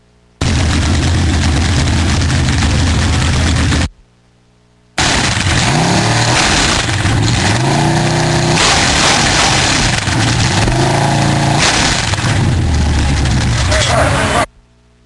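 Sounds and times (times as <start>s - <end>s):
engine revving: 5.0s - 14.5s.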